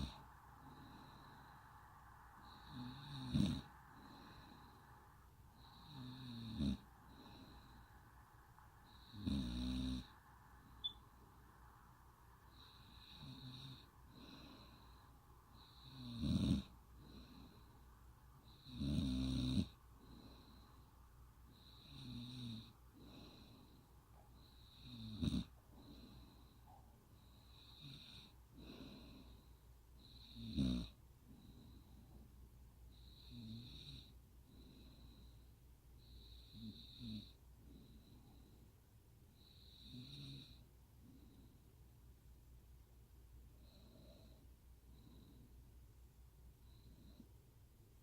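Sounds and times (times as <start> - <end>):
woman snoring: 0.0 - 1.5, 2.4 - 4.8, 5.6 - 7.9, 8.8 - 10.2, 12.5 - 17.6, 18.4 - 20.6, 21.5 - 23.8, 24.4 - 26.4, 27.2 - 31.7, 33.0 - 34.2, 36.0 - 38.0, 39.4 - 40.6.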